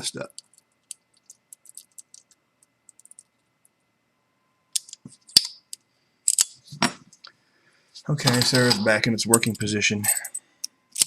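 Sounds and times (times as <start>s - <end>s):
padlock metallic clicks and rattles: 0.3s - 3.3s, 4.8s - 6.6s, 8.3s - 11.0s.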